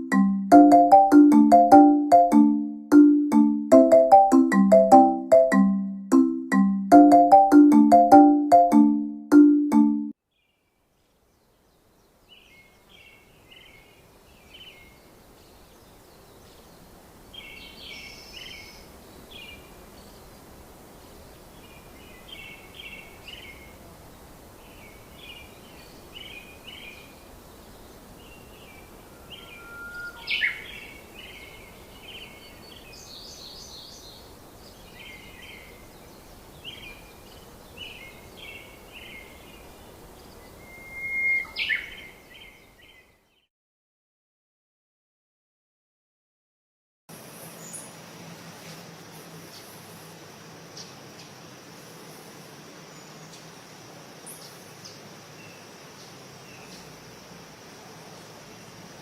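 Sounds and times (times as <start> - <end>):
background hiss: 10.3 - 43.0, 47.1 - 59.0
small bird chirping: 28.2 - 34.1
sharp bird call: 28.7 - 31.1, 40.5 - 42.1.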